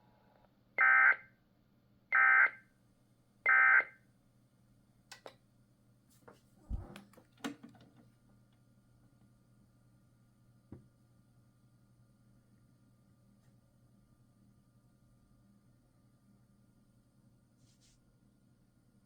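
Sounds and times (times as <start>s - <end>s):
low steady hum: 6.6s - 7.3s.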